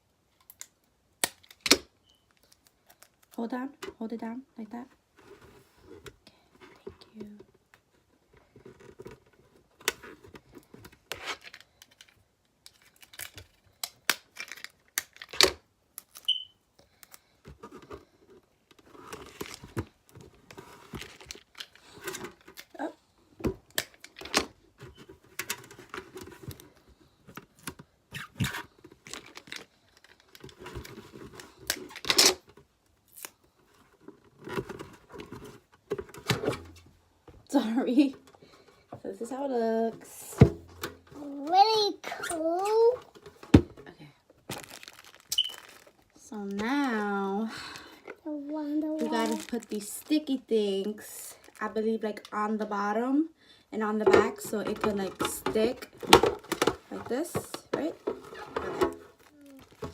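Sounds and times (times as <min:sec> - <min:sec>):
plastic parts clicking and crinkling: 0:00.3 - 0:04.1, 0:05.2 - 0:36.9, 0:42.6 - 0:47.1, 0:49.0 - 0:52.4, 0:54.0 - 0:59.9
brief squeak: 0:16.2 - 0:16.6, 0:45.3 - 0:45.6
adhesive tape pulled and torn: 0:33.1 - 0:33.4.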